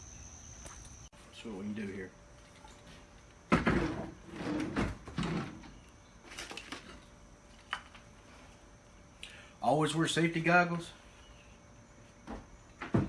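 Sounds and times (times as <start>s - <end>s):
knocks and scrapes of objects moved: 2.4s - 8.2s.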